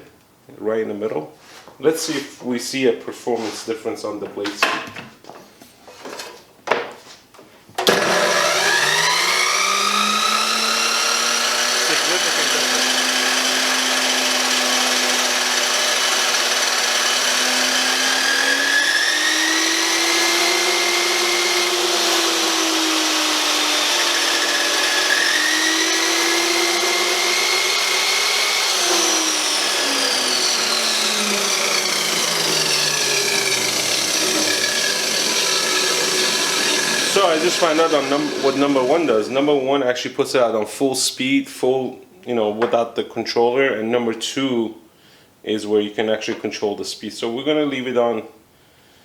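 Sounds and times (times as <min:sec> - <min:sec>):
chop saw motor whining: 0:07.8 - 0:39.5.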